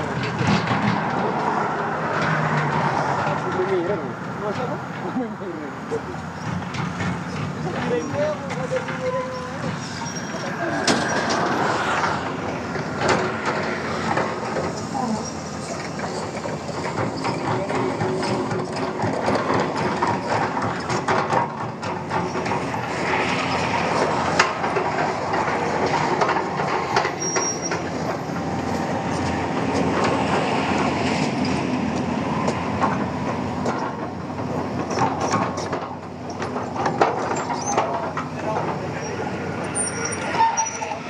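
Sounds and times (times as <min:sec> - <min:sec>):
excavator engine: 0:00.0 - 0:41.0
metallic clanks and knocks: 0:06.4 - 0:23.1.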